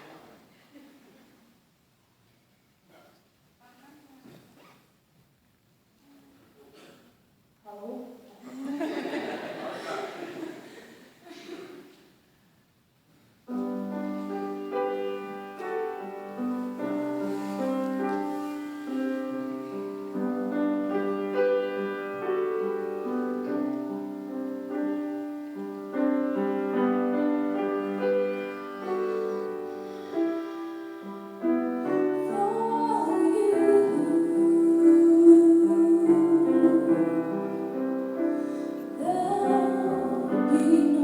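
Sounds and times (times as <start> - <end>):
piano playing slow chords: 13.5 - 41.0
person singing: 32.2 - 37.8, 39.0 - 41.0.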